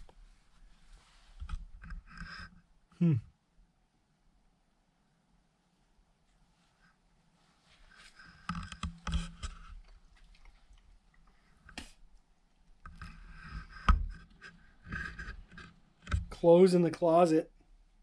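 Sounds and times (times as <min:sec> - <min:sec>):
rustling and scraping: 0:00.0 - 0:02.7, 0:06.3 - 0:12.1, 0:12.8 - 0:16.4.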